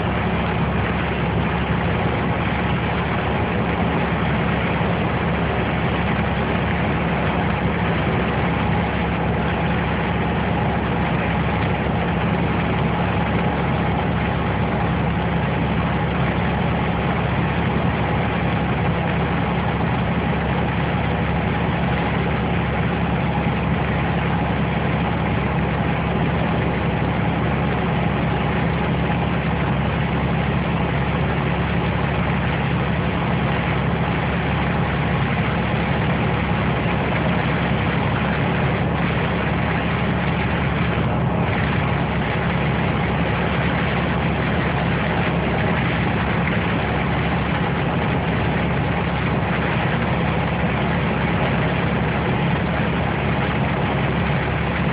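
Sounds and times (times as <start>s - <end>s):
vehicle engine drone: 0.0s - 54.9s.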